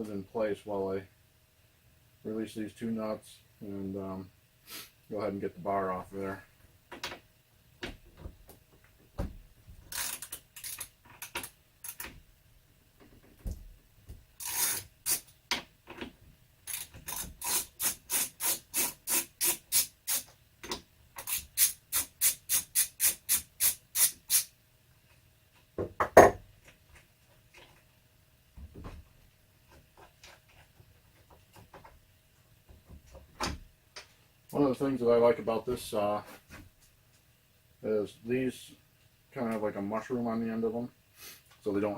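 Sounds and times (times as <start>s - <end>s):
ratchet wrench clicking: 9.9s - 10.9s, 14.4s - 15.3s, 21.2s - 24.5s.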